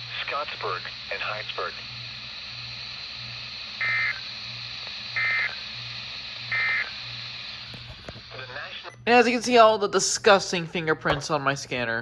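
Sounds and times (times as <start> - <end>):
receiver hum and hiss: 0.0 - 12.0
warbling data tones: 3.8 - 4.4, 5.0 - 9.0.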